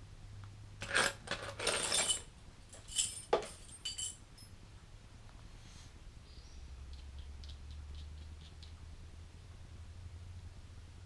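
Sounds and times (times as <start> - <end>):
metal hardware clinking: 0.8 - 4.5.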